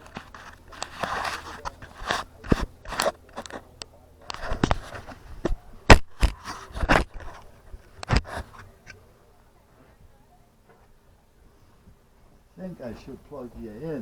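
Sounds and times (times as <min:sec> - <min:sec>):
tools clicking and knocking: 0:00.0 - 0:08.6.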